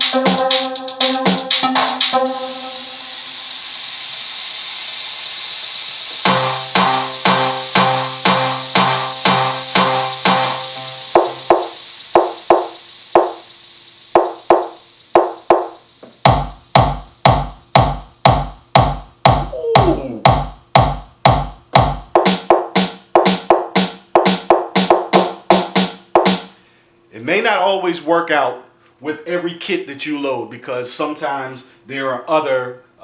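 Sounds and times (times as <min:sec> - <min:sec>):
programmed drum beat: 0:00.0 - 0:26.6
heavy kick drum: 0:06.1 - 0:13.5, 0:14.2 - 0:26.5.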